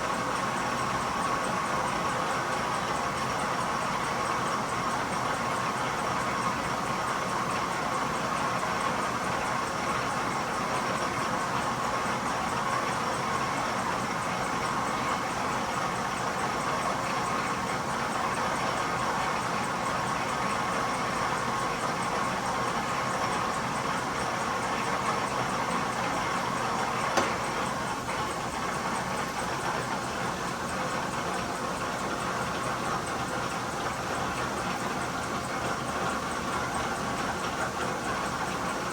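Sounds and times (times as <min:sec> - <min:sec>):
metal lathe running: 0:08.9 - 0:38.9.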